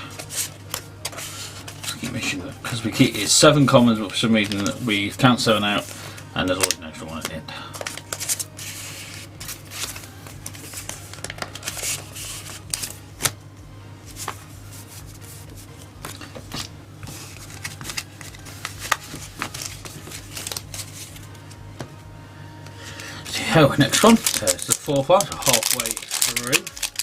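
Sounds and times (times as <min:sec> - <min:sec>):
steady low hum: 0:00.0 - 0:26.1
wrapper crinkling: 0:17.3 - 0:21.3, 0:23.3 - 0:27.0.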